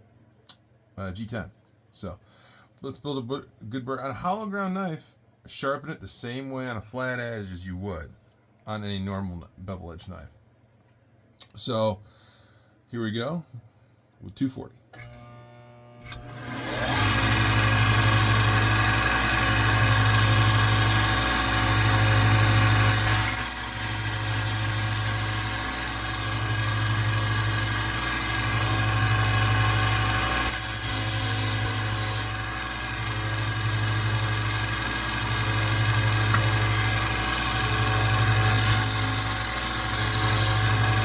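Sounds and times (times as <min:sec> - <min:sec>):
belt sander humming: 0:15.0 - 0:41.0.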